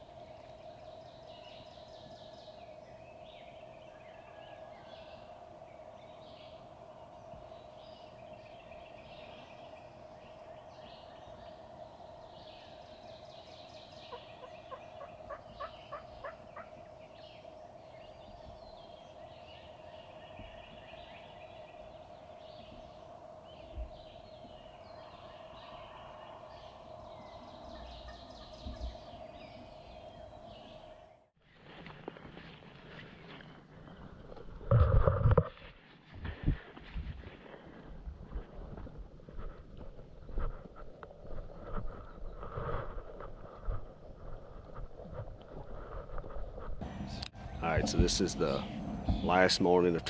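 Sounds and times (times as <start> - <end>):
songbirds singing: 0.0 - 31.3, 46.8 - 50.0
turkey gobbling: 14.1 - 16.7
low thumps: 46.8 - 49.7
steady drone: 46.8 - 50.0.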